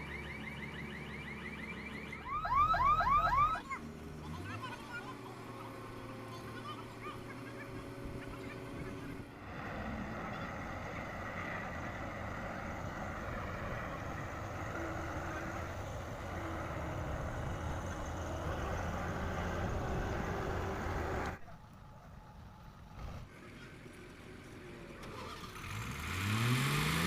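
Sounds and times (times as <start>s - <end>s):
heavy diesel engine running: 3.6s - 21.4s.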